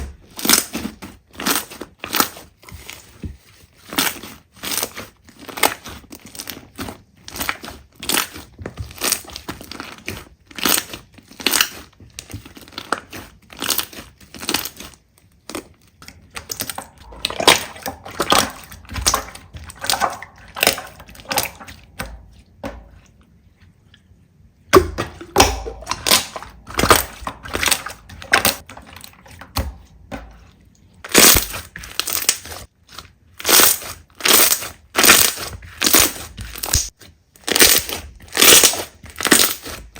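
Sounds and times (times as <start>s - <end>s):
slime crackling and popping: 31.0s - 39.9s.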